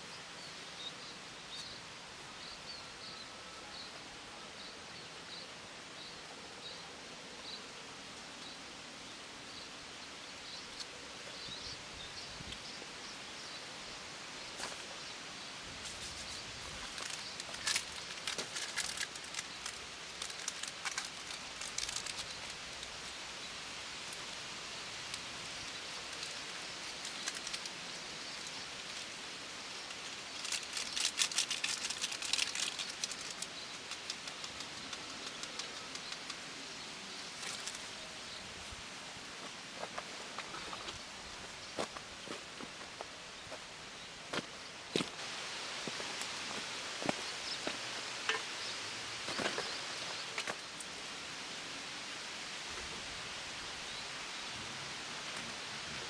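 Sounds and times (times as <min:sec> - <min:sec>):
outdoor background noise: 0:00.0 - 0:56.0
rapid small crackles and clicks: 0:15.8 - 0:23.1, 0:25.0 - 0:38.0.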